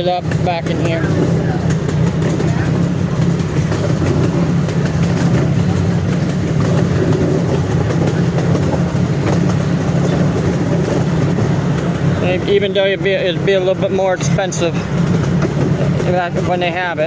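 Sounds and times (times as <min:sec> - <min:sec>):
ride train rumbling on track: 0:00.0 - 0:17.0
wheels clicking on rails: 0:00.0 - 0:17.0.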